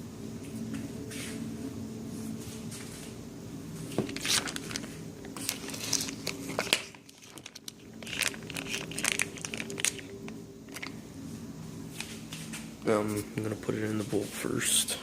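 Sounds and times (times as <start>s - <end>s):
steady low hum: 0.0s - 15.0s
plastic packaging crinkling: 4.0s - 11.0s.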